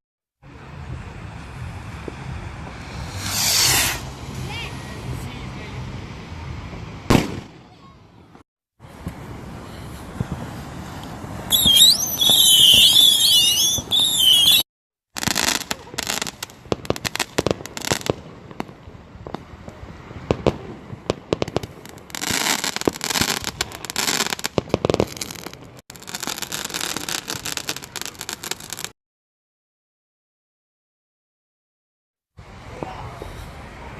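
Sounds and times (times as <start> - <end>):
fireworks bangs and crackling: 0.5 - 14.6, 15.2 - 29.0, 32.6 - 33.9
whistling fireworks screeching: 1.4 - 5.2, 9.1 - 18.1, 20.2 - 28.9.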